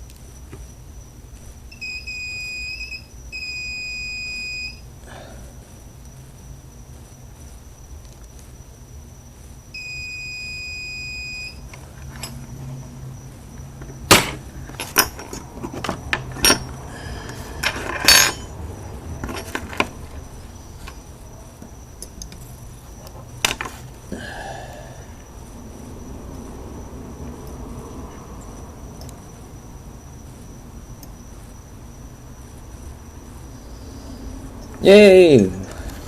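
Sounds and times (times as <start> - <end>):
multimeter continuity beep: 1.7 - 4.9, 9.7 - 11.7
sharp clicks and knocks: 13.6 - 16.8, 21.6 - 23.8.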